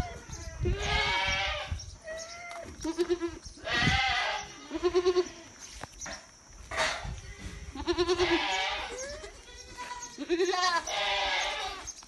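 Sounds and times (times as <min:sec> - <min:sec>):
goats bleating: 0:02.5 - 0:05.5, 0:07.4 - 0:11.9.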